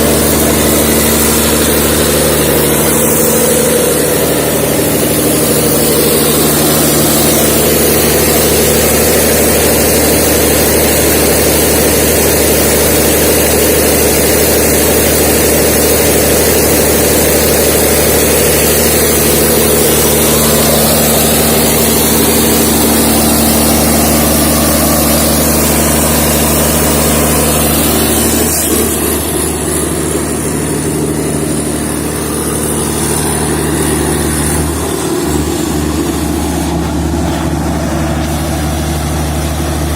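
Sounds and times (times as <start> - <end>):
diesel generator droning: 0.0 - 39.9.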